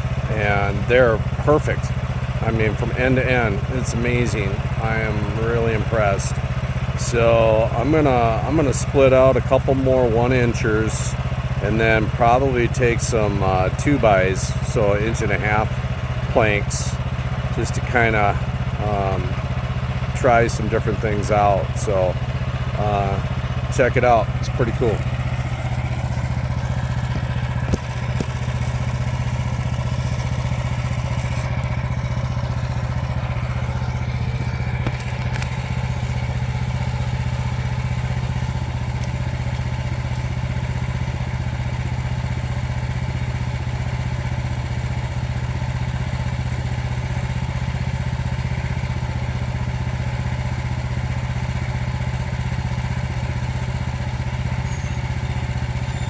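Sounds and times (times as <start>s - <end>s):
small gasoline engine running: 0.0s - 56.0s
band saw cutting log: 29.8s - 30.4s, 34.2s - 36.6s.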